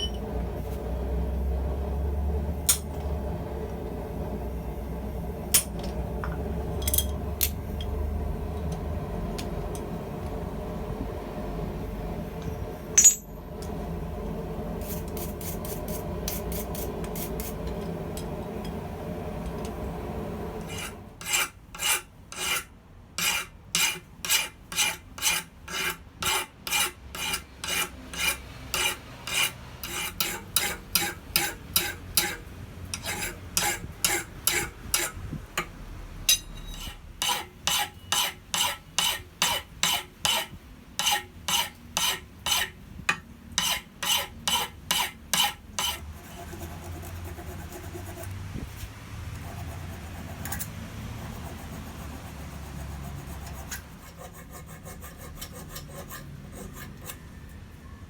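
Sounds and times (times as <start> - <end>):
machine hum: 0.0 - 21.2
hand file on steel: 20.7 - 35.2, 36.7 - 42.8, 43.6 - 48.3, 49.5 - 57.3.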